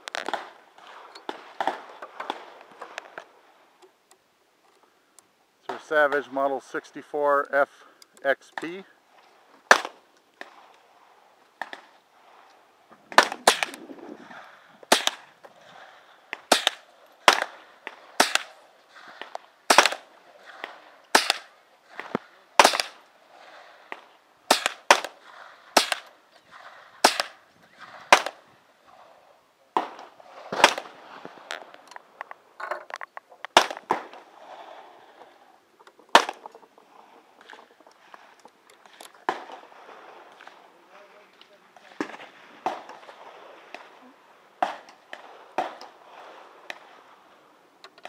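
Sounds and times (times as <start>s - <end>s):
rifle shots: 0.1s - 2.6s, 9.7s - 10.6s, 13.1s - 13.9s, 14.9s - 15.4s, 16.4s - 19.1s, 19.7s - 23.0s, 24.5s - 26.1s, 27.0s - 28.4s, 29.8s - 31.0s, 33.5s - 34.3s, 36.1s - 36.5s, 39.2s - 40.6s.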